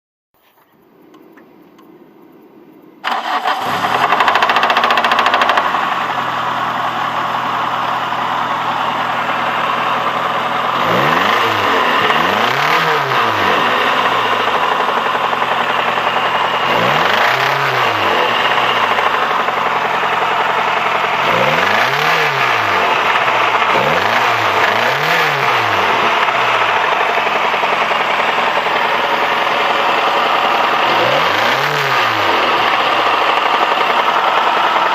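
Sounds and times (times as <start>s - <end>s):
car engine starting: 0.8s - 34.9s
engine idling and revving: 1.0s - 34.9s
engine knock: 3.1s - 34.9s.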